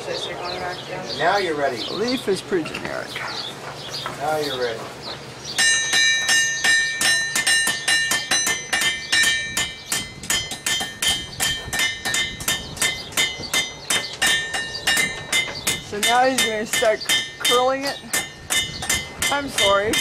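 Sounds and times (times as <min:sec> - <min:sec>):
hammer striking iron on anvil: 0:05.6 - 0:20.0.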